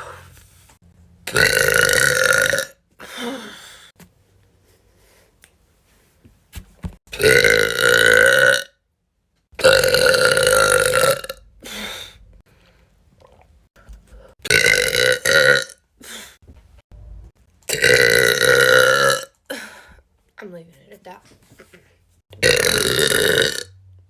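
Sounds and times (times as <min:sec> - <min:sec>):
woman burping loudly: 0:01.3 - 0:03.5, 0:07.2 - 0:08.8, 0:09.6 - 0:11.4, 0:14.4 - 0:15.8, 0:17.7 - 0:19.7, 0:22.4 - 0:23.7.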